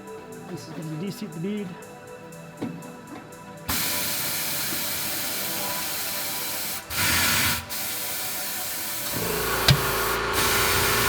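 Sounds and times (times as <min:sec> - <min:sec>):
compressed air hissing: 0:03.7 - 0:11.0.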